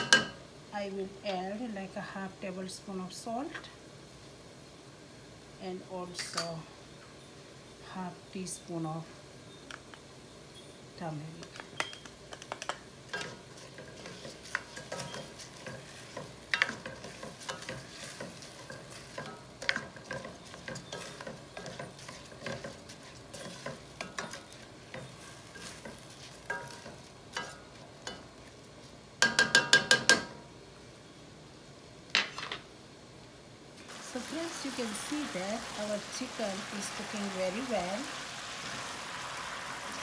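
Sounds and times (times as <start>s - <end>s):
low sizzle: 0.0s - 40.0s
spoon scraping a pot: 11.8s - 28.2s.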